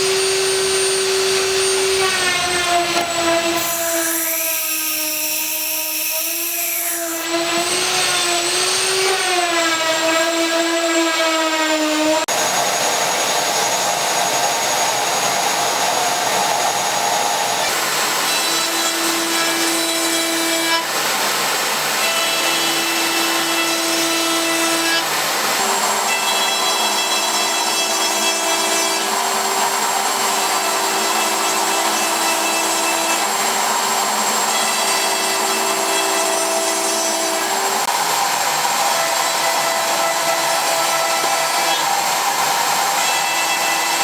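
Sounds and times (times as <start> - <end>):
bit cutting wood: 0.0 - 12.5, 15.2 - 44.0
router spindle whine: 0.0 - 20.8.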